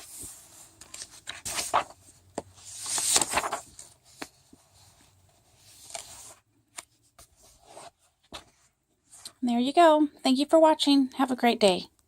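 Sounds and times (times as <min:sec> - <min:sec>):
paper pages rustling and turning: 0:00.0 - 0:09.3.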